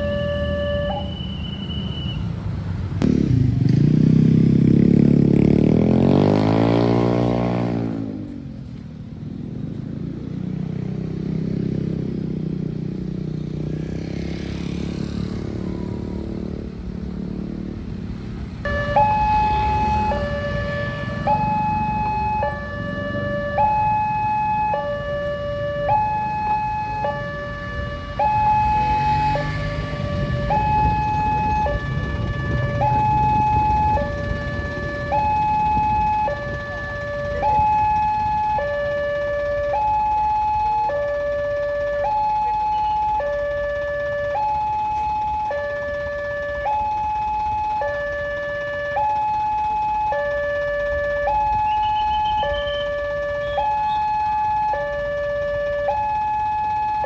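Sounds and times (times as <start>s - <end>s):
level crossing two-tone alarm: 0.0s - 2.1s, 18.7s - 57.0s
traffic noise: 0.0s - 57.0s
vehicle passing close: 2.3s - 8.3s, 9.9s - 49.2s.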